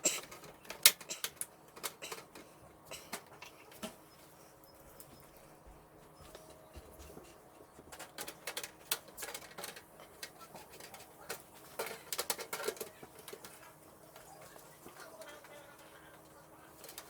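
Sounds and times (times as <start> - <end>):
computer parts and screws rattling: 8.0 - 13.6.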